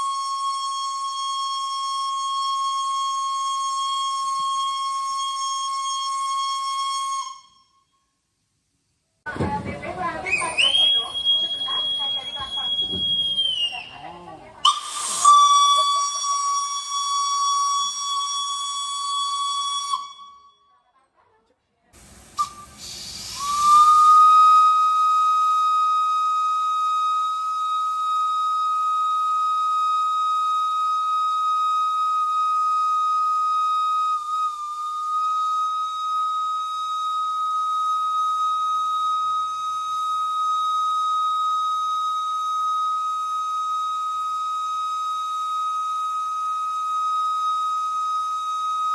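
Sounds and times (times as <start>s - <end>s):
steam locomotive whistle: 10.1s - 13.9s, 14.6s - 20.2s, 22.2s - 48.9s
hiss of steam: 14.8s - 15.6s, 22.0s - 24.1s.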